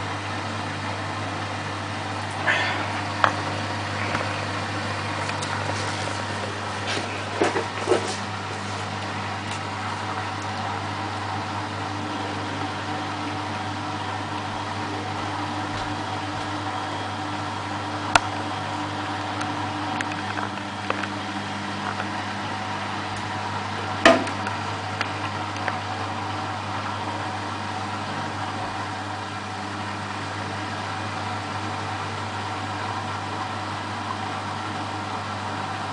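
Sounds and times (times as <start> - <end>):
sharp knock from machine: 24.1 - 24.4.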